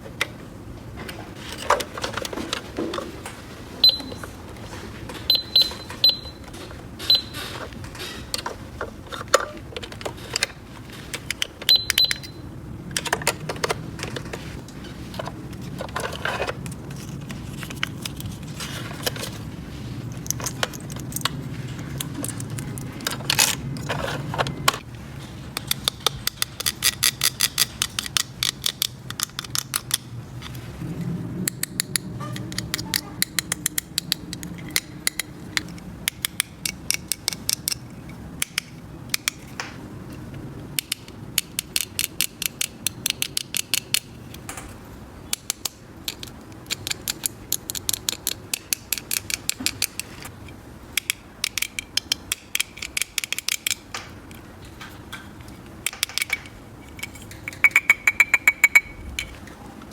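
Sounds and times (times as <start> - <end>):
plastic toy pieces clicking: 25.6 - 30.1, 31.4 - 39.5, 40.8 - 44.1, 45.3 - 50.3, 50.9 - 54.4, 55.8 - 59.3.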